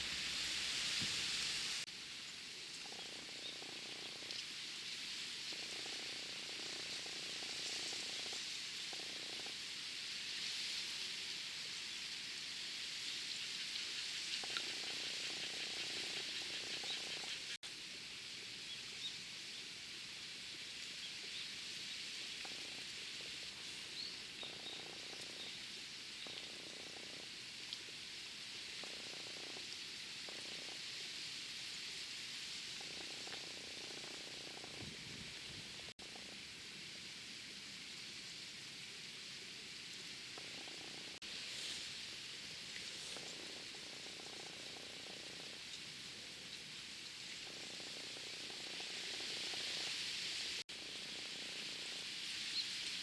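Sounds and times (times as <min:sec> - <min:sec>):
steady high hiss: 0:00.0 - 0:53.0
frogs calling: 0:13.4 - 0:17.6.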